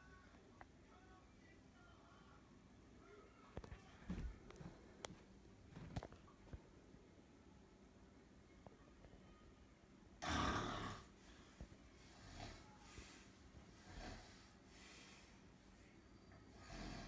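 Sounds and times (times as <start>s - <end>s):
man snoring: 10.2s - 11.1s, 12.1s - 12.7s, 13.8s - 14.5s, 16.5s - 17.0s.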